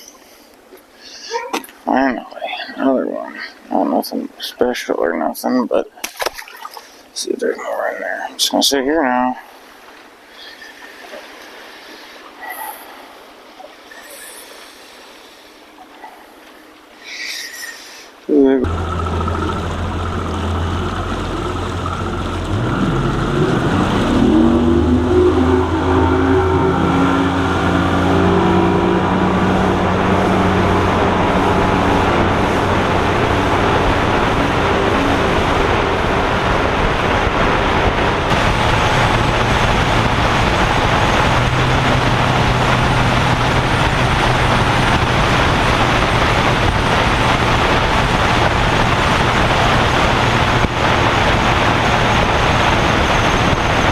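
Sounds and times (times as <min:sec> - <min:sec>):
engine speeding up: 0:18.6 - 0:53.9
loud rushing wind: 0:18.7 - 0:53.9.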